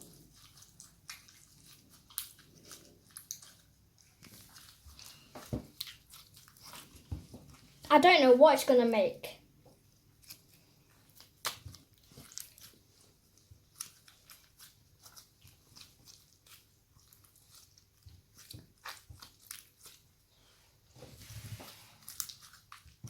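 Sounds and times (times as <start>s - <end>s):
slime squishing with wet pops: 0.0s - 8.0s, 9.5s - 23.0s.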